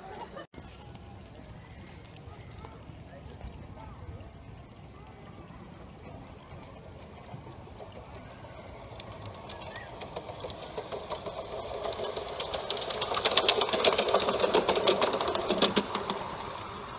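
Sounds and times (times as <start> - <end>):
model train running hum: 1.0 - 16.9
model train wheels clicking: 3.4 - 16.9.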